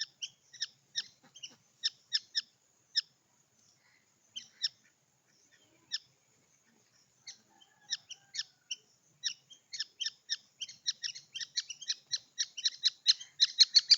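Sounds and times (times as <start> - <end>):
birds chirping shrilly: 10.6 - 13.9.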